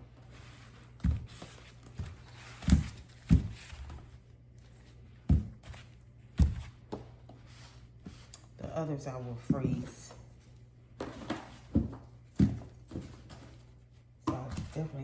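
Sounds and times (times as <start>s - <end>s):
dull thumps and knocks: 11.0s - 13.5s.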